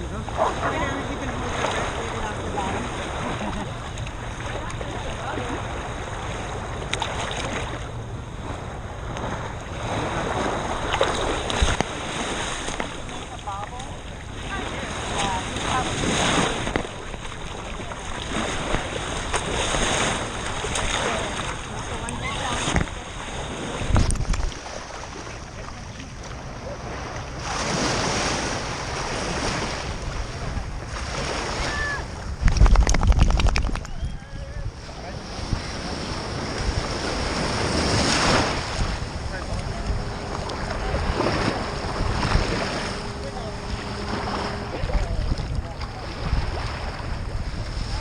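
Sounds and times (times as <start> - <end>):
surf rushing: 0.0 - 48.0
wind buffeting microphone: 0.0 - 48.0
low rumble: 32.0 - 48.0.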